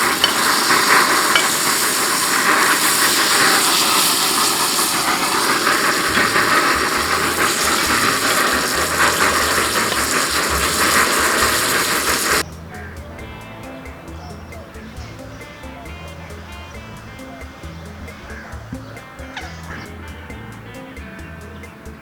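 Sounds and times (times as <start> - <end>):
steak sizzling in a hot pan: 0.0 - 12.4.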